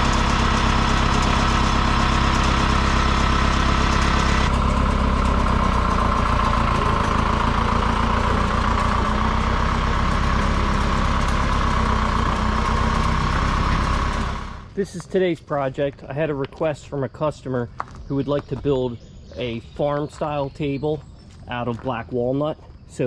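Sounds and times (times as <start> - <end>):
sawmill engine running: 0.0 - 14.8.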